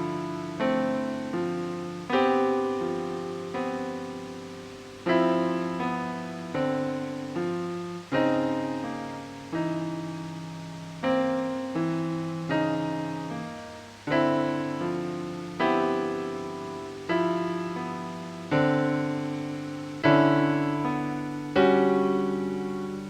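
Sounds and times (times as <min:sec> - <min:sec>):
slow piano chords: 0:00.0 - 0:23.0.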